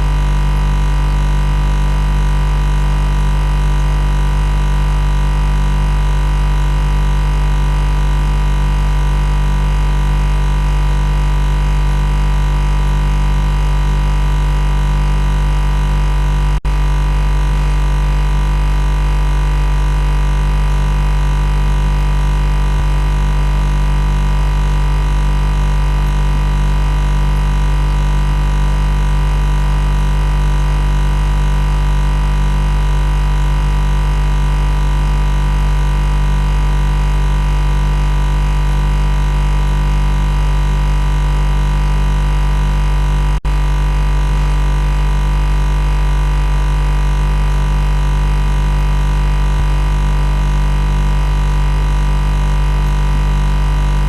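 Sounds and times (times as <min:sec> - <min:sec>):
loud machine buzz: 0:00.0 - 0:54.0.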